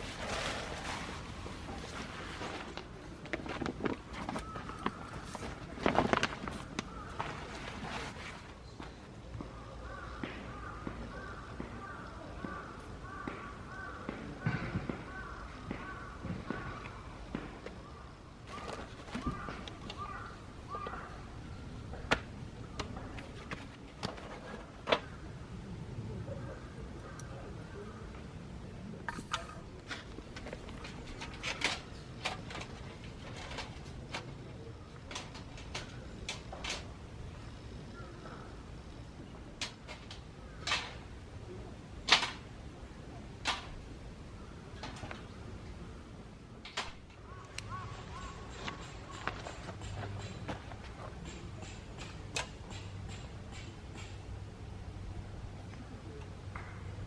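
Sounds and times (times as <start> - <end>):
bird calling: 4.1 - 28.3, 37.3 - 39.5, 47.0 - 54.2
sharp knocks and clacks: 48.5 - 54.2.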